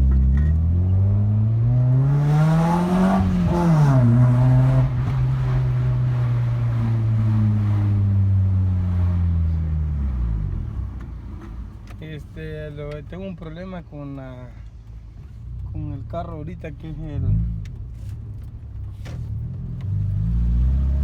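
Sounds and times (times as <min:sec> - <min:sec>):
car engine and exhaust revving: 0:00.0 - 0:12.0, 0:16.8 - 0:21.0.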